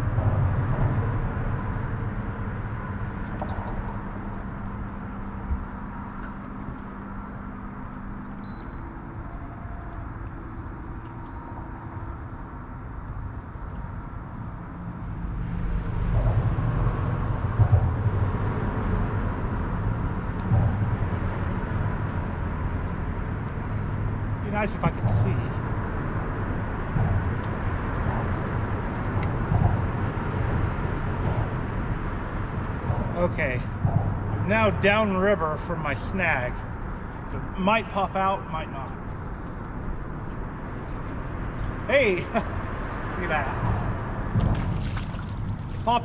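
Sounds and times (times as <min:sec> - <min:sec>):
wind buffeting microphone: 0:13.0 - 0:46.0.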